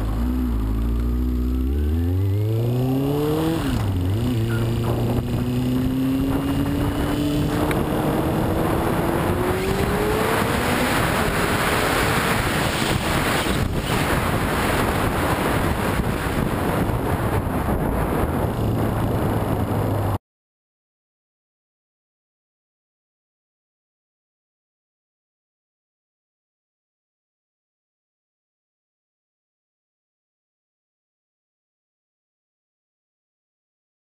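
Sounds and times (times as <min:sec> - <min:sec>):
motorcycle engine revving: 0:00.0 - 0:20.2
wind noise: 0:00.0 - 0:20.2.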